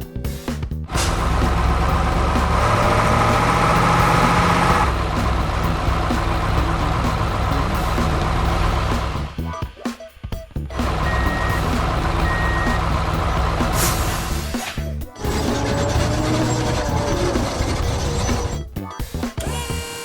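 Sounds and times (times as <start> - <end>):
heavy vehicle engine rumbling: 0.8 - 9.6, 10.6 - 18.8.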